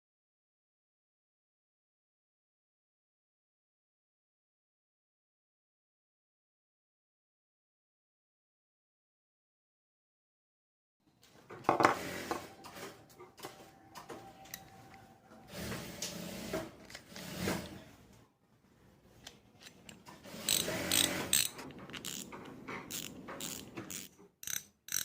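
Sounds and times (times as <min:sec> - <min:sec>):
fishing reel clicker ratcheting: 0:20.5 - 0:22.3, 0:22.9 - 0:25.0.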